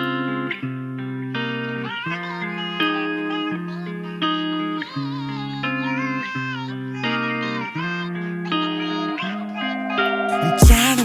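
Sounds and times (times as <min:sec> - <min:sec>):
plucked hip hop beat melody: 0:09.9 - 0:11.0.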